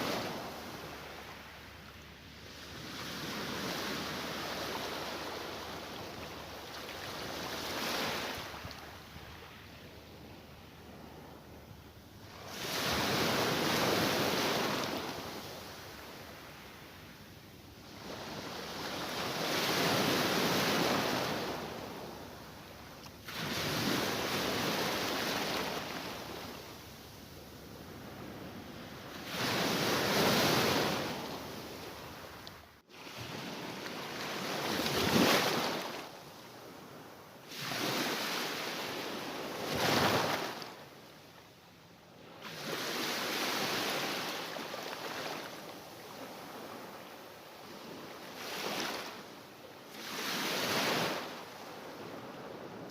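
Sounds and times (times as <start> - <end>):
sea waves breaking: 29.1 - 36.2, 36.8 - 40.8.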